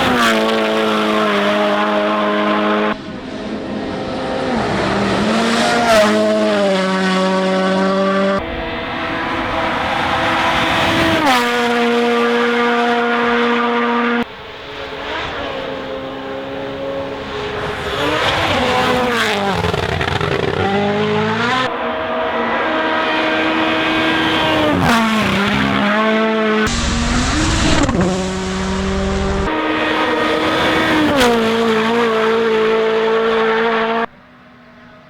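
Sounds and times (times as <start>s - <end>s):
rally car engines revving hard: 0.0s - 35.0s.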